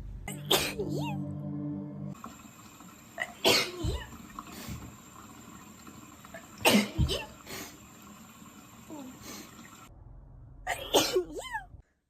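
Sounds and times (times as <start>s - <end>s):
person sneezing: 0.4s - 1.0s.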